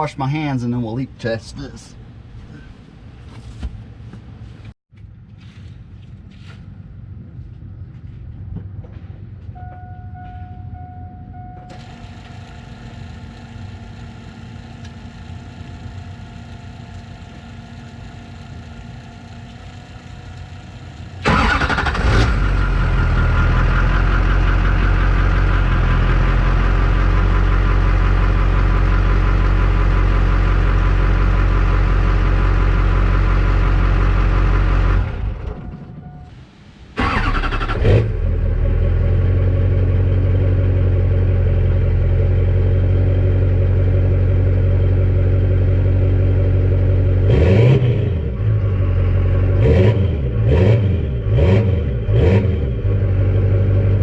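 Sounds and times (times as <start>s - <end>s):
two-note tone: 9.6s - 11.8s
diesel engine idling: 10.8s - 36.3s, 37.0s - 47.3s, 48.1s - 52.2s.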